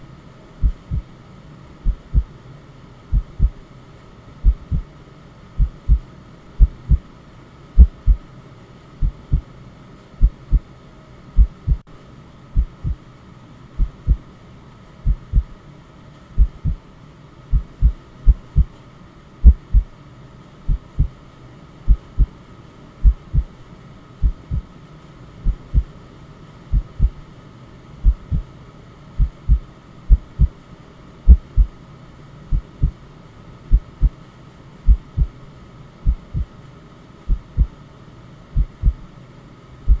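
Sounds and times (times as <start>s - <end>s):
faint steady hum: 0.0s - 40.0s
heartbeat thumping: 0.6s - 1.1s, 1.8s - 2.3s, 3.1s - 3.6s, 4.4s - 4.9s, 5.6s - 6.0s, 6.6s - 7.0s, 7.8s - 8.2s, 9.0s - 9.4s, 10.2s - 10.7s, 11.4s - 11.8s, 12.6s - 13.0s, 13.8s - 14.2s, 15.0s - 15.6s, 16.4s - 16.8s, 17.5s - 18.8s, 19.4s - 19.9s, 20.7s - 21.2s, 21.9s - 22.3s, 23.0s - 23.5s, 24.2s - 24.7s, 25.4s - 25.9s, 26.7s - 27.2s, 28.0s - 28.4s, 29.2s - 30.5s, 31.3s - 31.7s, 32.5s - 33.0s, 33.7s - 34.2s, 34.9s - 35.4s, 36.0s - 36.5s, 37.3s - 37.8s, 38.6s - 39.0s.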